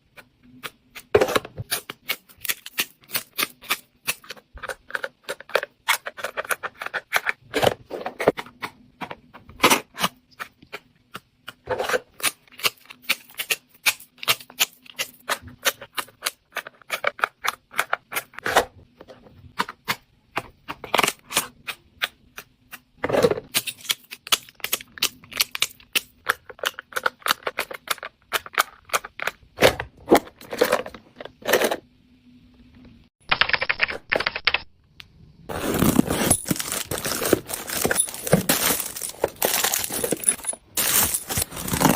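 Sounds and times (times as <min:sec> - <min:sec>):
rustling: 0:35.5 - 0:41.9.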